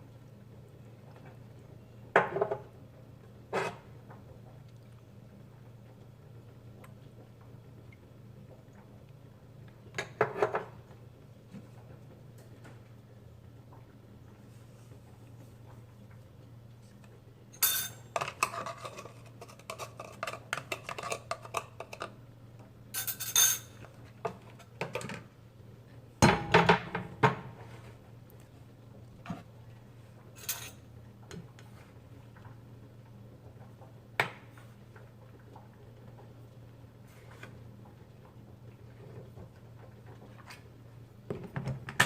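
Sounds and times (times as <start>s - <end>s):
low steady hum: 0.0s - 42.0s
dishes and cutlery clinking: 17.6s - 22.1s, 23.0s - 23.8s, 30.4s - 30.8s.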